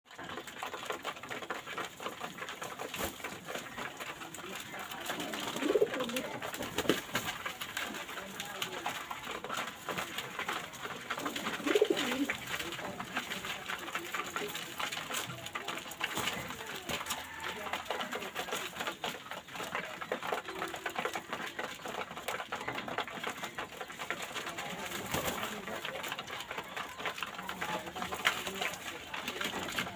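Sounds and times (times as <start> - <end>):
pigeons cooing: 4.6 - 7.2, 11.0 - 12.6.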